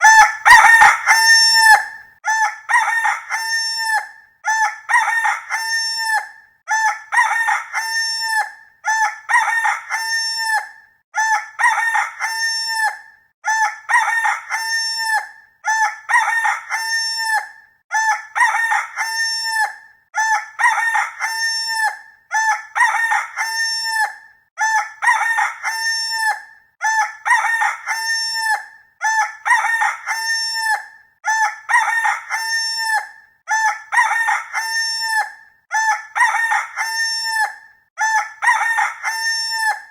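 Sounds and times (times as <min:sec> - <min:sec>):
rooster crowing: 0:00.0 - 0:02.0.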